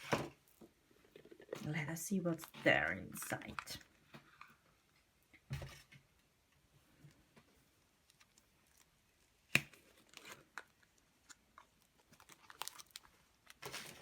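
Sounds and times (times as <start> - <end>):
plastic crinkling and clicking: 7.1 - 14.0
wrapper rustling: 8.0 - 14.0
sharp plastic crack: 9.5 - 11.4.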